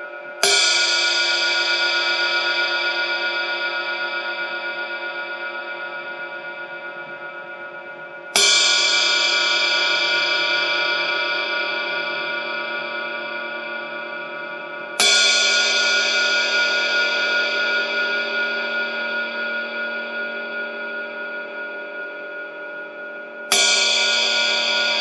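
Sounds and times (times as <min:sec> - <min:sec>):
ride cymbal struck with stick: 0:00.4 - 0:03.5, 0:08.3 - 0:12.3, 0:14.9 - 0:18.8, 0:23.5 - 0:25.0.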